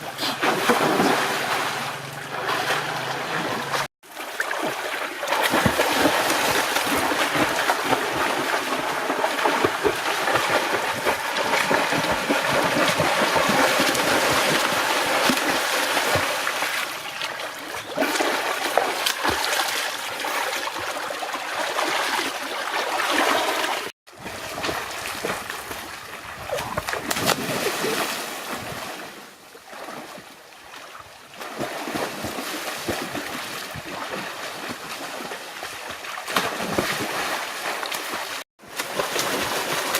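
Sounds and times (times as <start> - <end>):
water splashing and sloshing: 0.0 - 39.9.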